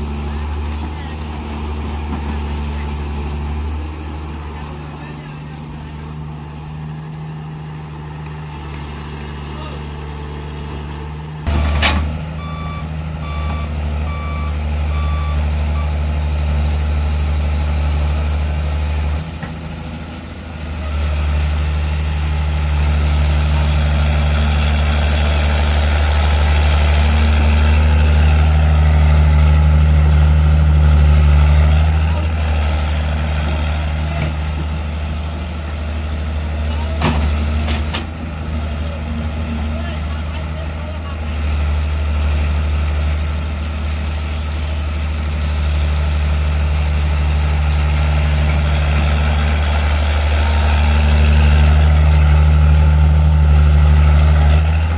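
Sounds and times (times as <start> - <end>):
heavy diesel engine under load: 0.0 - 54.9
reversing alarm beeping: 12.3 - 16.0.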